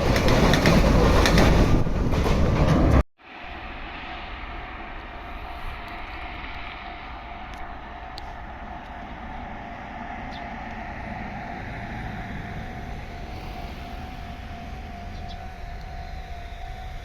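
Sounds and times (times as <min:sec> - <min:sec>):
train rumble: 0:00.0 - 0:17.0
level-crossing alarm ringing: 0:06.8 - 0:17.0.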